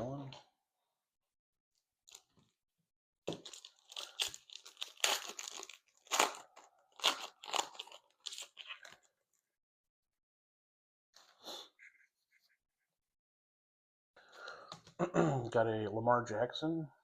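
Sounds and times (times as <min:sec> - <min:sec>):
wrapper tearing and crinkling: 0:03.3 - 0:09.1.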